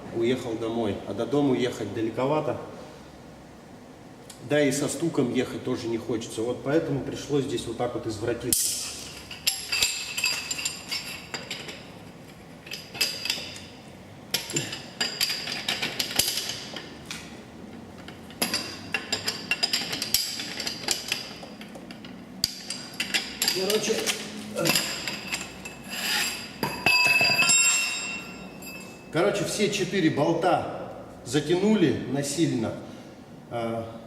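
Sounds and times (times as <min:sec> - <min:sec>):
metal tools clanking and scraping: 0:08.5 - 0:17.0, 0:18.0 - 0:29.1.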